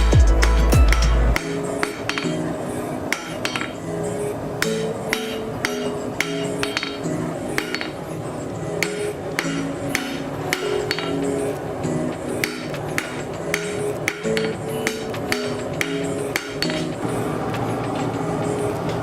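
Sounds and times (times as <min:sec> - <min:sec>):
hammer striking steel on anvil: 0:01.4 - 0:02.4, 0:03.1 - 0:03.8, 0:04.6 - 0:07.0, 0:07.6 - 0:08.0, 0:08.8 - 0:11.4, 0:12.4 - 0:17.0.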